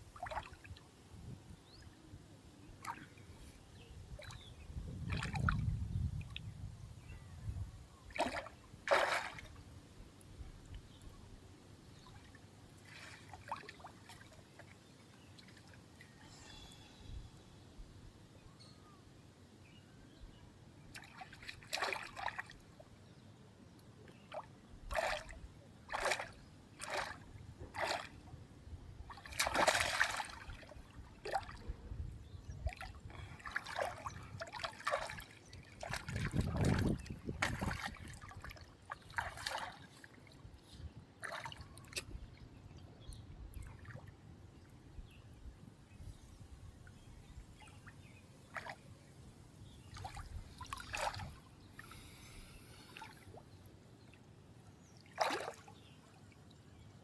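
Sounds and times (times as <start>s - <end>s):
water splashing and sloshing: 0.1s - 0.8s, 4.2s - 6.4s, 8.1s - 9.7s, 12.0s - 16.2s, 20.9s - 22.8s, 24.2s - 28.4s, 29.0s - 40.6s, 41.2s - 42.3s, 48.5s - 48.8s, 49.8s - 52.2s, 55.0s - 56.2s.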